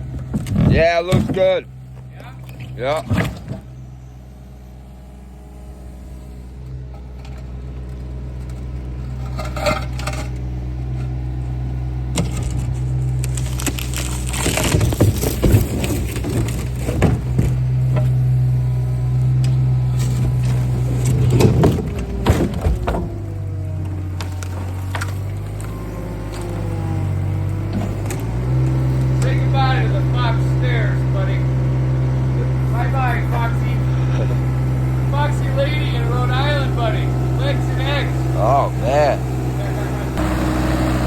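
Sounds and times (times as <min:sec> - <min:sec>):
heavy machine engine running: 0:00.0 - 0:41.0
concrete cracking and crunching: 0:12.1 - 0:17.8.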